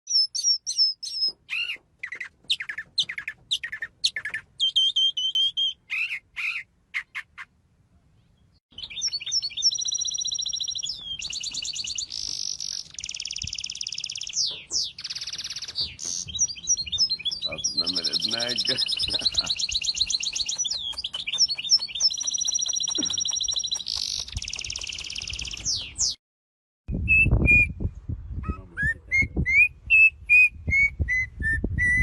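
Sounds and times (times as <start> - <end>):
bird high-pitched trills and rattles: 0.1 - 7.5, 8.8 - 26.2
bird chirps sweeping down: 8.7 - 26.2.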